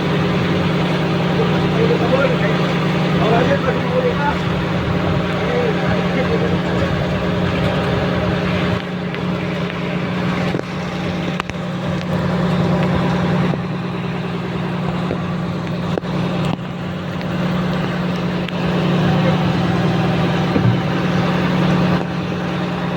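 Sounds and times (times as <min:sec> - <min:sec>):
boat engine running steadily: 0:00.0 - 0:22.9
faint knocks: 0:20.5 - 0:21.2.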